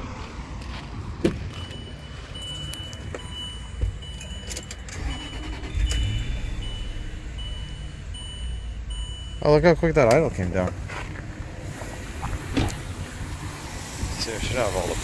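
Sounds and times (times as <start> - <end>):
car engine idling: 1.4 - 15.0
high electronic tone: 1.6 - 10.8.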